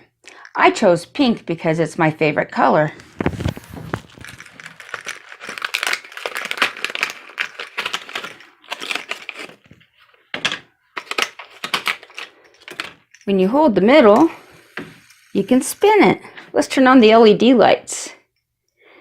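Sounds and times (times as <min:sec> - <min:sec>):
plastic crinkling and clicking: 0:03.0 - 0:13.3.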